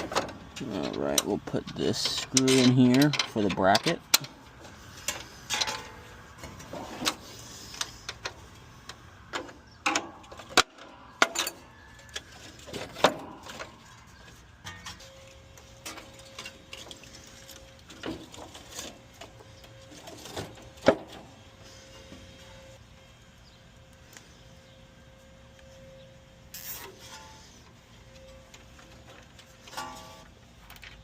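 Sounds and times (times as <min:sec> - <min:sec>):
tools and metal parts clicking: 0:00.0 - 0:20.9
faint steady tone: 0:07.4 - 0:31.0.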